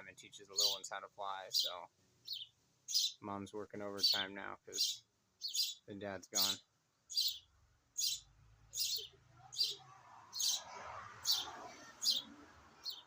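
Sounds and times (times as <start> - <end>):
nestling birds hissy begging calls: 0.5 - 0.8, 1.5 - 3.2, 4.0 - 5.8, 6.4 - 7.4, 8.8 - 13.0.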